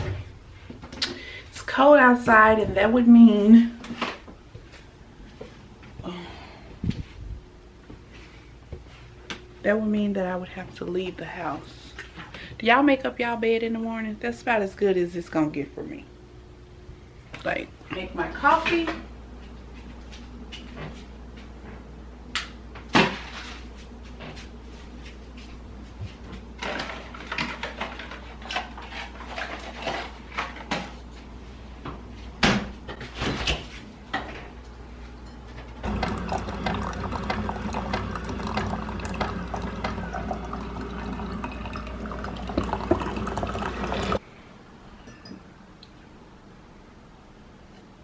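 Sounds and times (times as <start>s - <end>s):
cups and utensils clinking: 35.2s - 44.2s
liquid running: 35.8s - 44.2s.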